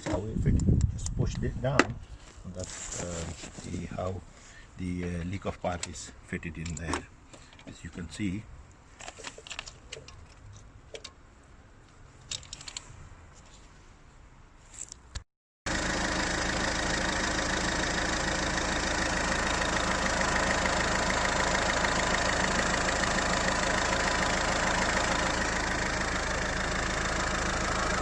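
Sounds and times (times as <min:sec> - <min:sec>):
diesel engine idling: 0:15.7 - 0:28.0.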